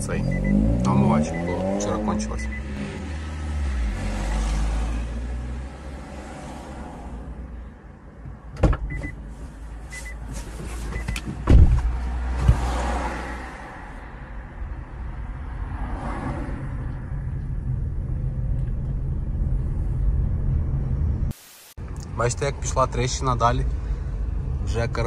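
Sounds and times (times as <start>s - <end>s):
loud thump: 11.4s - 12.7s
low rumble: 14.0s - 24.7s.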